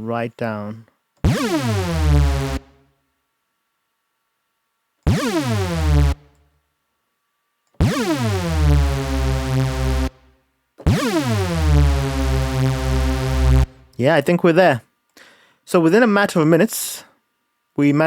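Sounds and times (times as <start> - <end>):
synthesizer notes swooping down: 1.2 - 2.8, 5.1 - 6.3, 7.8 - 10.2, 10.9 - 13.9.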